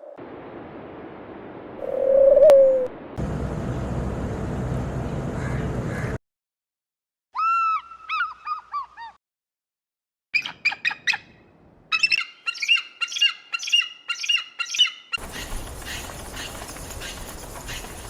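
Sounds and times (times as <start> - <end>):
bird calls: 10.4 - 18.0.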